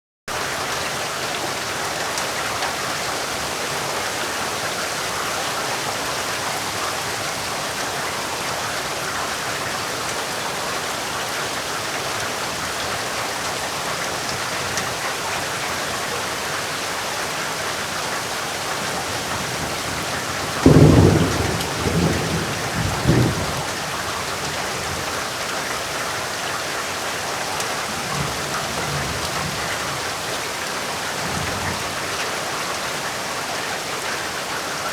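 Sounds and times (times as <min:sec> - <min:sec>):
heavy rain falling: 0:00.3 - 0:34.9
thunder rumbling: 0:18.9 - 0:25.1.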